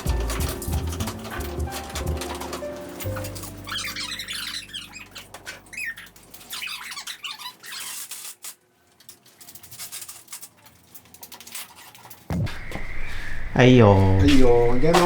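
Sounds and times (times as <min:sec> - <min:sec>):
small birds chirping: 0:00.0 - 0:08.0, 0:12.3 - 0:15.0
low hum: 0:12.3 - 0:15.0.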